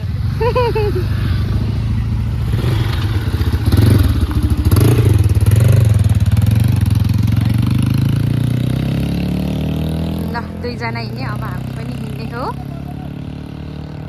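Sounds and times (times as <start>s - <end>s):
motor scooter engine revving: 0.0s - 14.0s.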